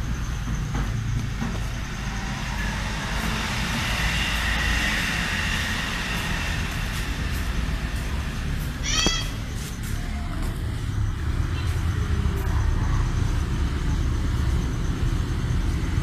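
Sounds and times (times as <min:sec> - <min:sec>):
electric motor humming: 0:01.3 - 0:09.9
high hiss: 0:01.6 - 0:10.3.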